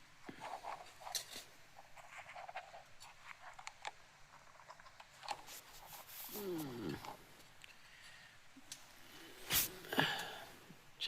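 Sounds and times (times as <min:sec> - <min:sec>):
light clicks and crackles: 0:00.2 - 0:09.0.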